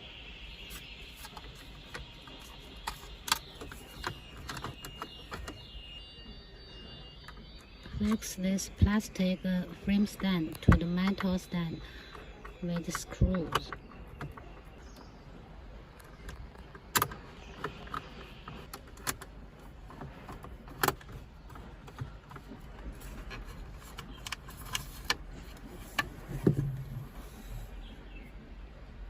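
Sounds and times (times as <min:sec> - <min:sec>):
stand parts clicking and tapping: 0:09.9 - 0:14.7.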